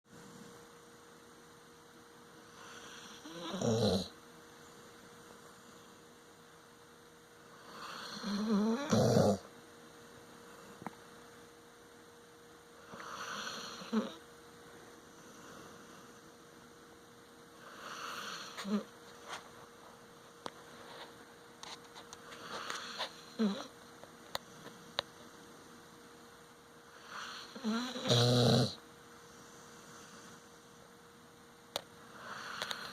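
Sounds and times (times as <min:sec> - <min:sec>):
dog snoring: 0:02.4 - 0:04.2, 0:07.6 - 0:09.5, 0:12.8 - 0:14.2, 0:17.6 - 0:18.9, 0:22.2 - 0:23.7, 0:26.9 - 0:28.8, 0:32.1 - 0:32.9.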